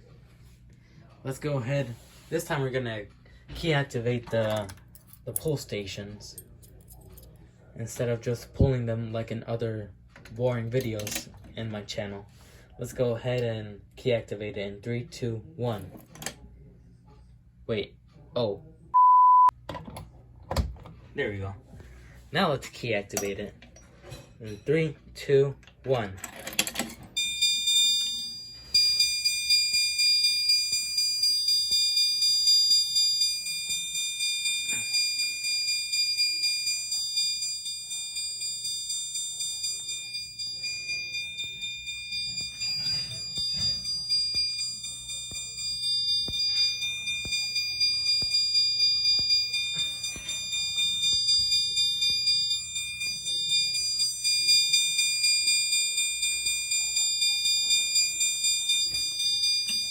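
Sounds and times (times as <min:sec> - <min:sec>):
fast high alarm chimes: 0:27.2 - 0:59.9.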